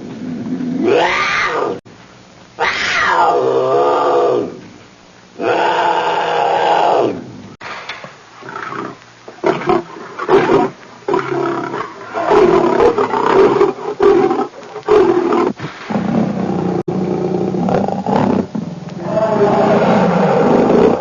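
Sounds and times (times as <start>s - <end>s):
leopard roaring and growling: 0.1s - 1.8s, 8.4s - 21.0s.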